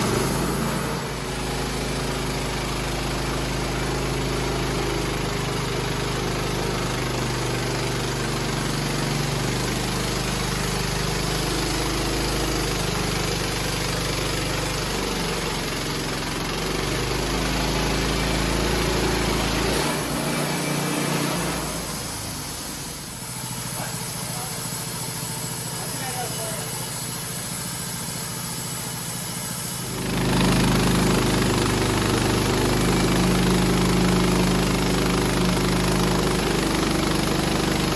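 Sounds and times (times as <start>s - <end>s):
broad hiss: 19.6s - 31.3s.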